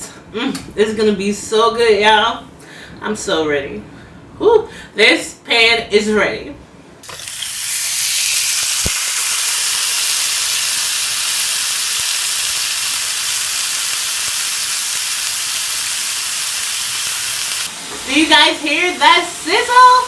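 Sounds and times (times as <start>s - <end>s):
steak sizzling on a grill pan: 7.2s - 20.0s.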